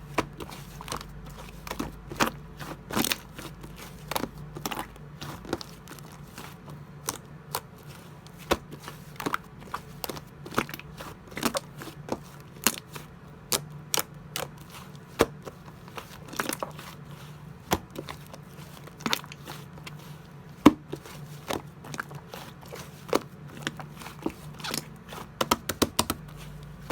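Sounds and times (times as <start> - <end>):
steady low hum: 0.0 - 26.9.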